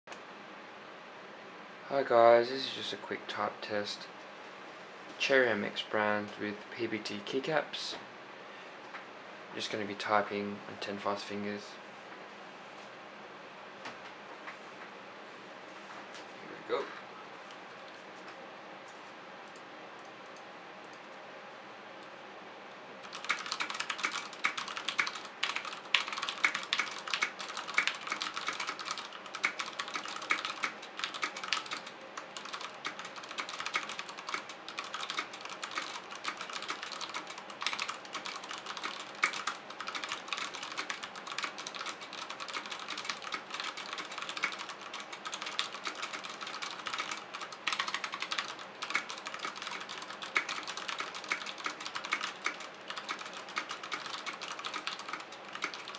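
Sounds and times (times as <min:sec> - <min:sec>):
fast typing on mechanical keyboard: 0:23.0 - 0:55.9.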